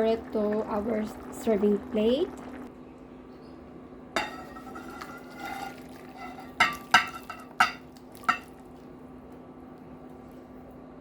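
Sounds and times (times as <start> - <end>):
steady low hum: 0.0 - 11.0
utensil scraping a pot: 4.2 - 7.5.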